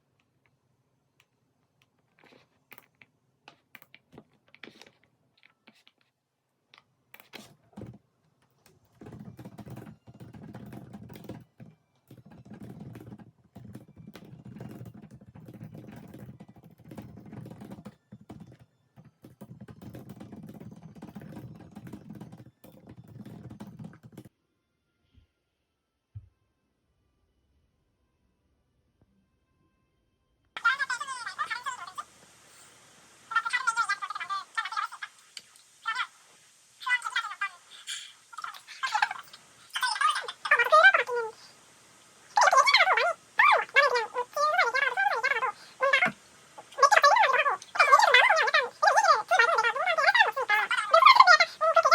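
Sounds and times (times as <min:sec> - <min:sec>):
typing on computer keyboard: 0:09.0 - 0:24.3.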